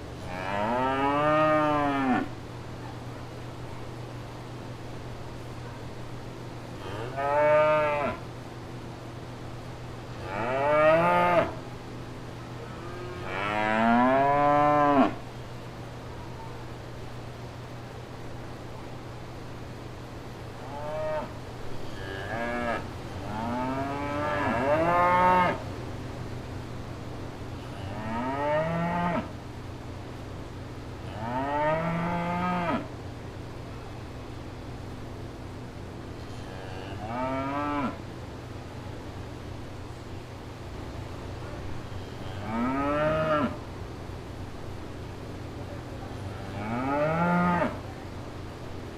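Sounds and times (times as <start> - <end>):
low background hum: 0.0 - 48.9
cows mooing: 0.3 - 2.3, 6.8 - 8.2, 10.2 - 11.6, 12.8 - 15.2, 20.7 - 25.6, 42.2 - 43.6.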